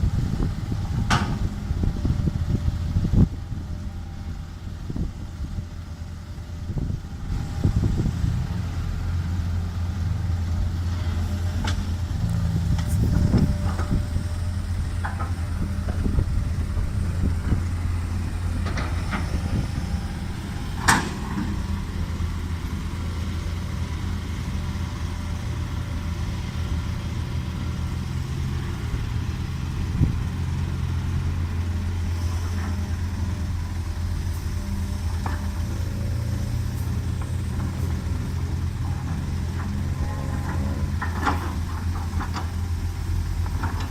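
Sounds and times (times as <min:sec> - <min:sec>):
excavator engine running: 0:00.0 - 0:43.9
metal clanks and knocks: 0:20.7 - 0:21.6.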